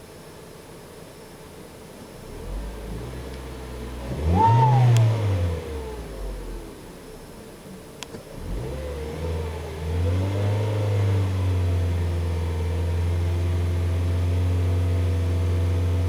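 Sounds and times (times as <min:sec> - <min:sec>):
car engine revving: 0:02.2 - 0:07.2, 0:08.3 - 0:12.4
turbo whistle: 0:04.3 - 0:05.2.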